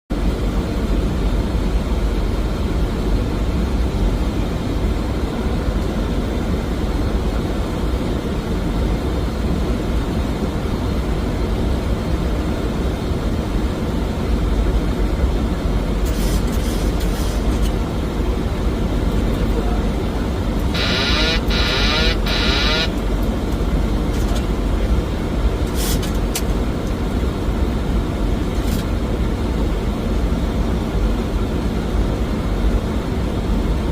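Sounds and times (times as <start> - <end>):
airflow and engine rumble: 0.1 - 33.9
brief buzzing: 20.7 - 23.0.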